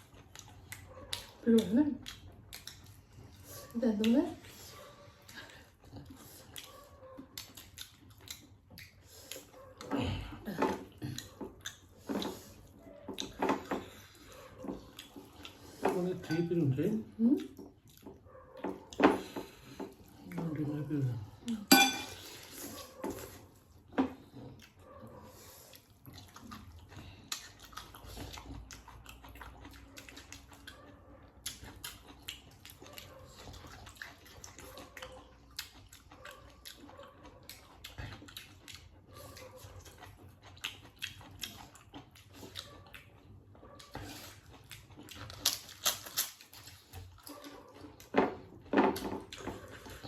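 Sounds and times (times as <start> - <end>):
people chewing: 0.0 - 50.0
clinks of plates and utensils: 21.7 - 22.2.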